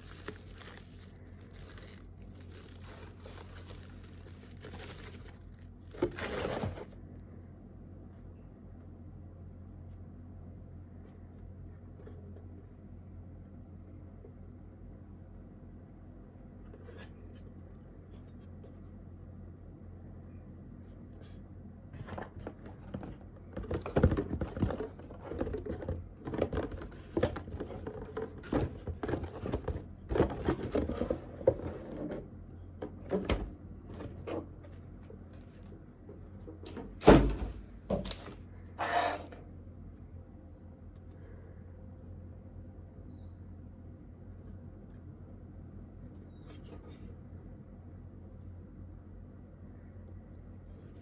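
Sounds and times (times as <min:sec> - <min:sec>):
packaging rustling: 0:00.0 - 0:07.0.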